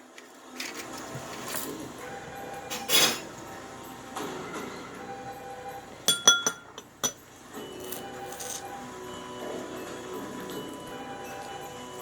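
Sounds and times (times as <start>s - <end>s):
quiet background music: 0.0s - 12.0s
tableware clinking: 2.6s - 3.3s, 6.1s - 7.2s, 7.8s - 8.8s.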